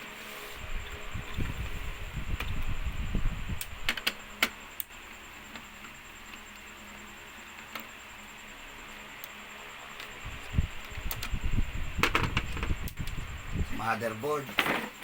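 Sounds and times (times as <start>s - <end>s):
rustle: 0.0s - 2.8s
faint steady hum: 0.0s - 15.0s
small clicks and taps of parts: 3.6s - 6.5s, 7.5s - 7.9s.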